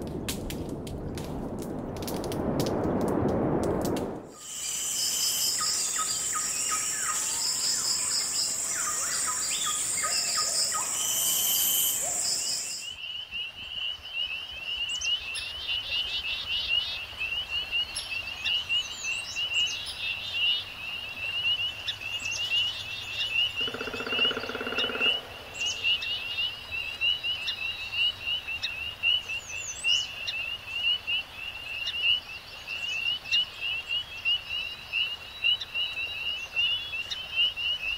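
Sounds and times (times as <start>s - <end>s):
insect and bird chorus: 4.3s - 37.9s
pulsing insect trill: 4.4s - 12.9s.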